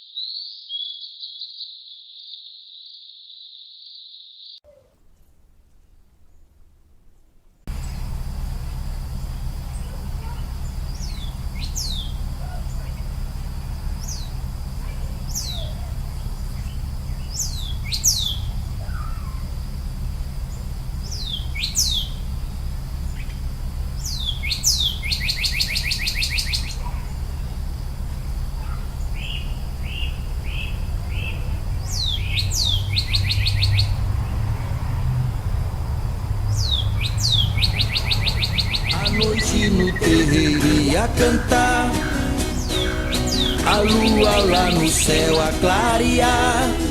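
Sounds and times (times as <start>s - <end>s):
small birds chirping: 0.0s - 6.6s, 7.2s - 46.9s
buzzy bird trills: 7.8s - 27.5s, 28.1s - 34.0s, 36.6s - 45.6s.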